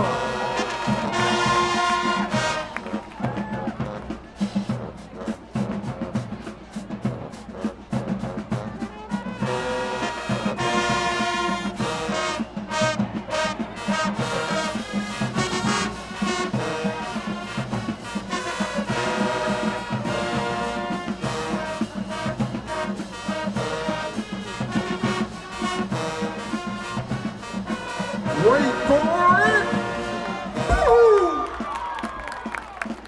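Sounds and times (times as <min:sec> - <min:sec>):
brass section playing: 0:00.0 - 0:06.3, 0:07.0 - 0:32.9
marching drumline: 0:00.0 - 0:33.0.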